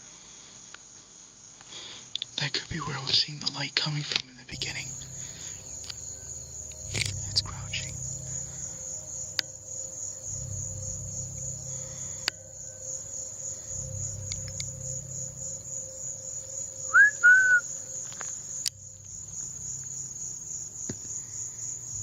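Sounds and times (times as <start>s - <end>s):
crickets chirping: 4.6s - 22.0s
person whistling two notes: 16.8s - 18.1s.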